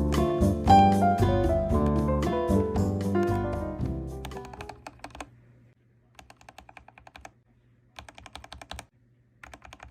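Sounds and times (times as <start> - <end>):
piano music: 0.0 - 4.8
mechanical keyboard typing: 4.2 - 5.3, 6.2 - 7.4, 8.0 - 9.9.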